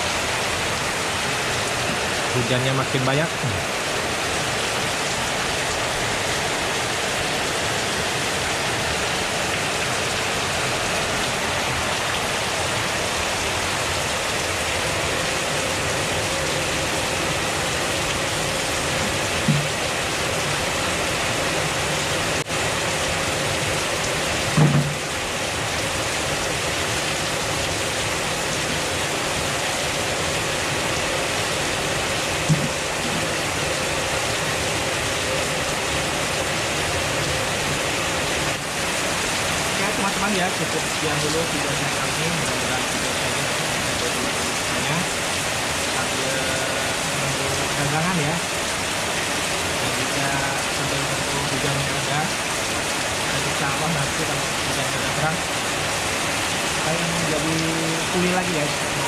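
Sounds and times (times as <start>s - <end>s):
heavy rain: 0.0s - 59.0s.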